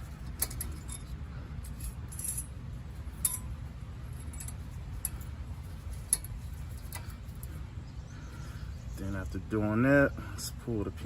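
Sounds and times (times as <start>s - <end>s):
steady low rumble: 0.0s - 11.0s
light metal clicks and clinks: 3.2s - 7.6s.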